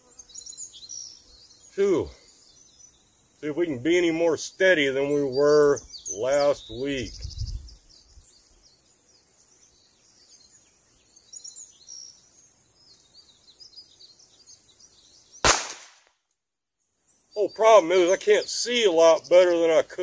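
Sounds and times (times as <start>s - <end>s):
bird chirps: 0.0s - 15.9s, 16.8s - 20.0s
insect chirps: 0.0s - 20.0s
pistol shot: 15.4s - 16.1s.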